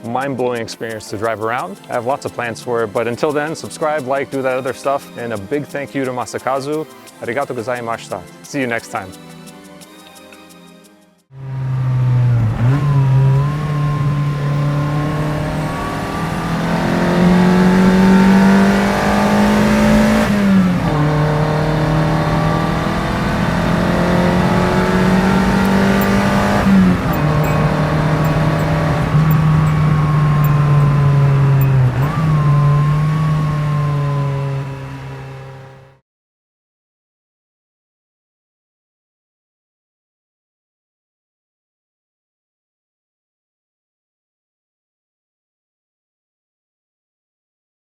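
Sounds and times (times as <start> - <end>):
car engine at high revs: 11.4 - 36.0.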